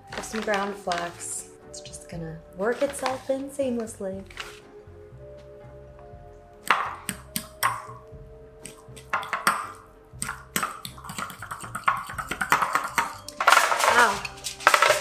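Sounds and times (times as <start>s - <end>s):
utensil scraping a bowl: 2.6s - 3.6s, 10.5s - 15.0s.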